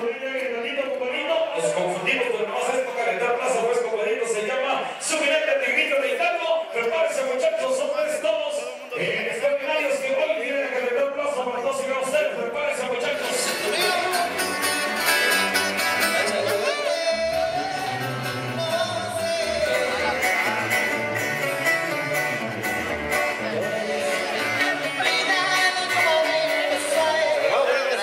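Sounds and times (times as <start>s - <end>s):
tuba bass line: 13.2s - 27.0s.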